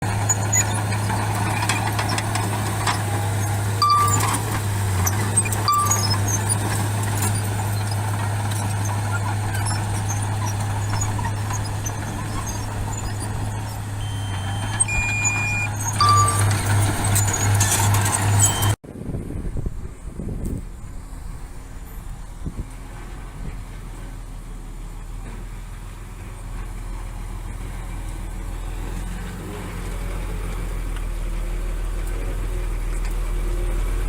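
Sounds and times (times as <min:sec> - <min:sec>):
bulldozer engine running: 0:00.0 - 0:34.0
short high beeps: 0:03.8 - 0:04.5, 0:05.6 - 0:06.3, 0:14.0 - 0:17.7.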